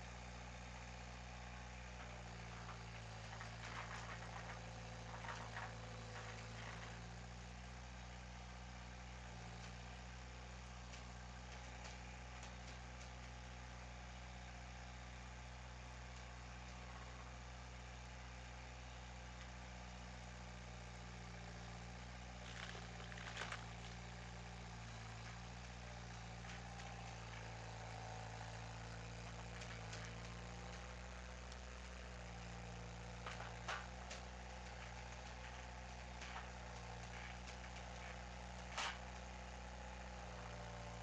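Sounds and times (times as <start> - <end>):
skid steer engine idling: 0.0 - 41.0.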